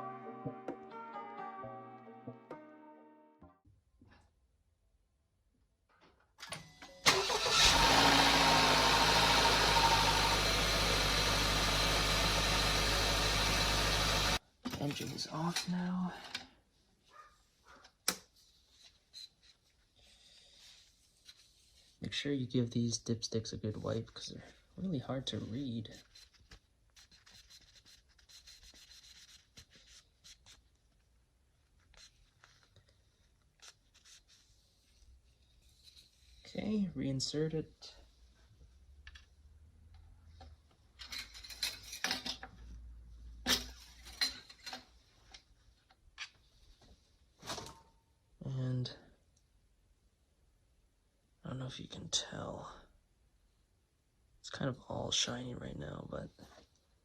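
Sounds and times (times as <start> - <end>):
car engine starting and idling: 7.0 - 14.4
dipstick being wiped: 18.4 - 22.0, 26.0 - 30.8, 31.8 - 36.5.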